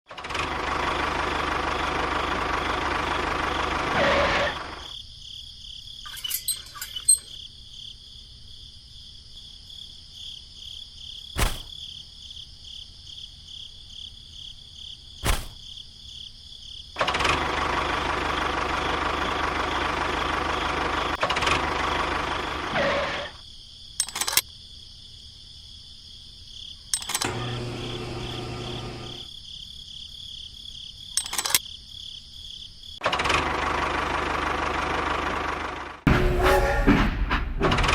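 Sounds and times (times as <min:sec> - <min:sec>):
crickets chirring: 0:04.5 - 0:17.0, 0:23.3 - 0:33.0
small motor running: 0:27.0 - 0:29.3.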